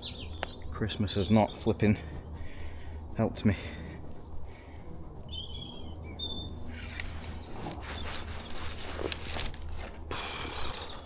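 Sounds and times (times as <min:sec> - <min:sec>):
rustling handling noises: 0:06.7 - 0:11.0.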